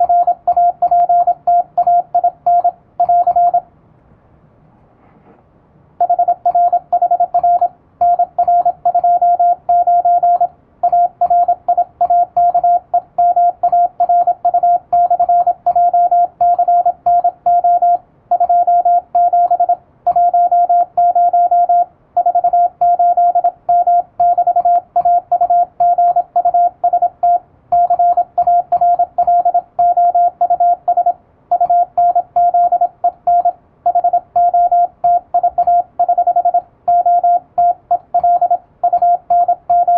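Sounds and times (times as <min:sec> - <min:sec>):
morse code beeps: 0:00.0 - 0:03.6, 0:06.0 - 0:39.9.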